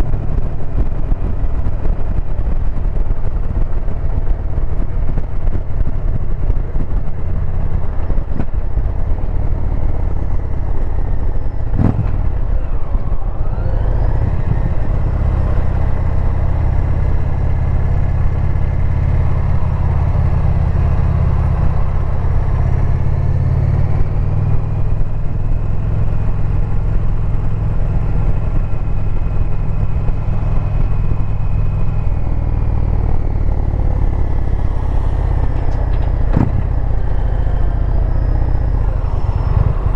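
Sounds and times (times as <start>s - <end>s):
motorcycle engine droning: 0.0s - 39.9s.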